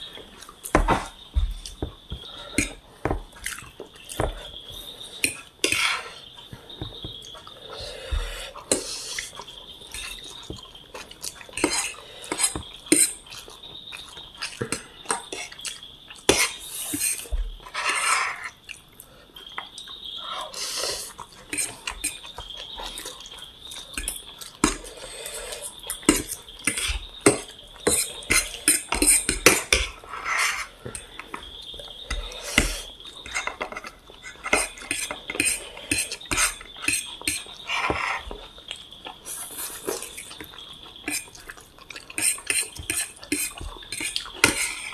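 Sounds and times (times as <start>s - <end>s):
cutlery clinking on a plate: 26.0s - 30.0s, 32.1s - 38.4s, 42.2s - 44.8s.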